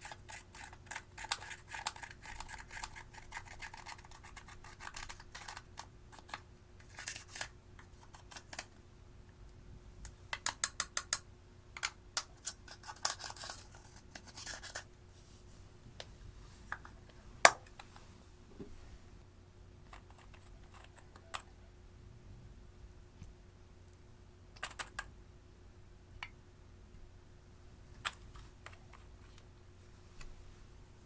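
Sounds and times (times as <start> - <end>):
faint steady hum: 0.0 - 31.0
sharp clicks and taps: 10.0 - 12.3.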